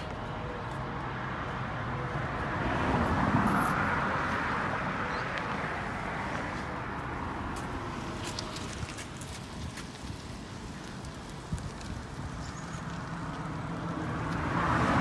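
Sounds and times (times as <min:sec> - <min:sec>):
outdoor background noise: 0:00.0 - 0:15.0
vehicle passing by: 0:01.4 - 0:09.7, 0:13.4 - 0:15.0.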